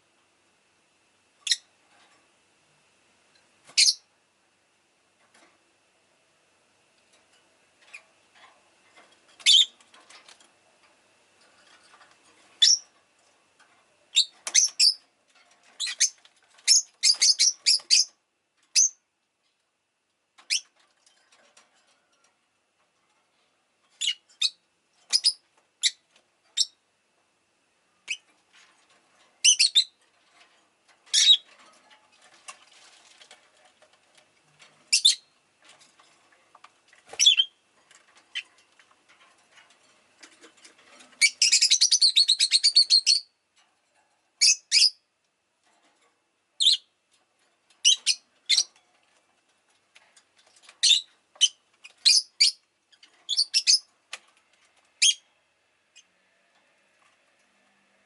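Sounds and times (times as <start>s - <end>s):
lovebird chirping: 12.6s - 12.8s, 15.8s - 18.1s, 29.4s - 30.0s, 37.2s - 37.6s, 41.2s - 43.3s, 53.3s - 53.9s.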